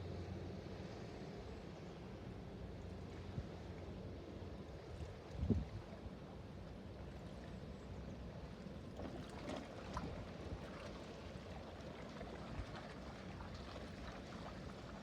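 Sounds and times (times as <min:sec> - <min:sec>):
water washing along hull: 0:08.8 - 0:15.0.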